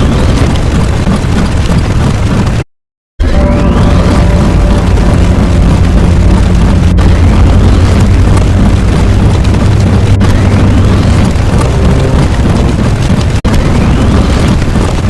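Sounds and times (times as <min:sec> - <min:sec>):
explosion-like rumble: 0:03.2 - 0:15.0.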